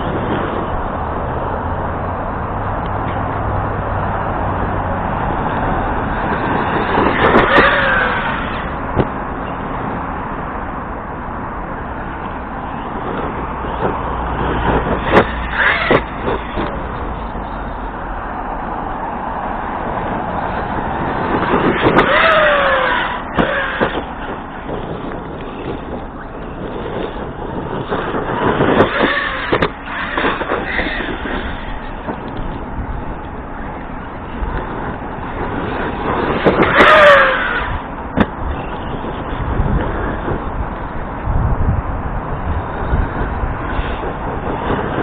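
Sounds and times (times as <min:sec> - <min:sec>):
steady rushing noise: 0:00.0 - 0:45.0
rc truck motor whining: 0:04.5 - 0:09.6, 0:12.4 - 0:18.2, 0:20.3 - 0:40.9.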